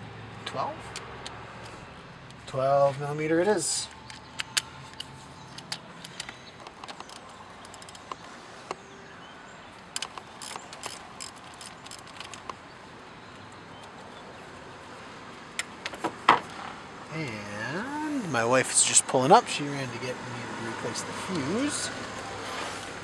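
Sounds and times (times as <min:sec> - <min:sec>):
socket wrench clicking: 0:04.0 - 0:08.2, 0:09.9 - 0:12.6.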